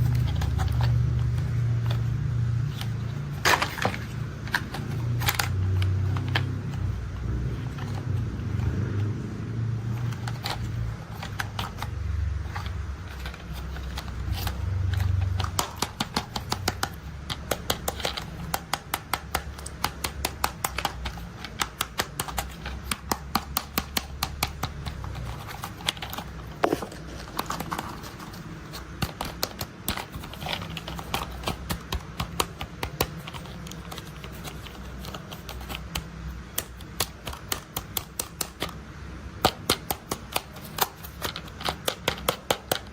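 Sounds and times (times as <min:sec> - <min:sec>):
toy vehicles clicking and rattling: 0:09.9 - 0:38.8.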